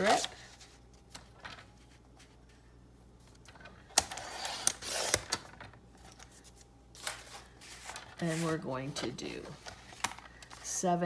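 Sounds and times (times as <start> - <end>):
paper rustling and scraping: 4.1 - 10.7.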